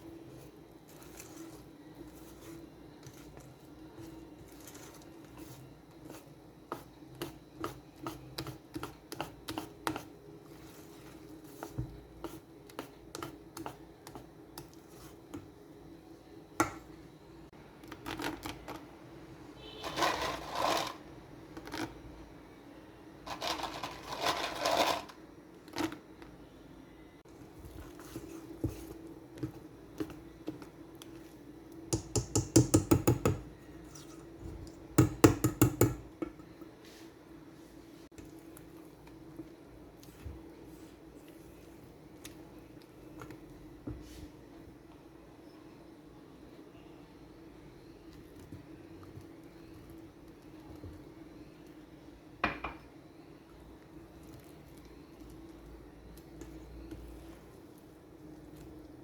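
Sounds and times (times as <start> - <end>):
utensil scraping a mixing bowl: 0.0 - 15.5, 19.6 - 21.0, 27.7 - 31.4.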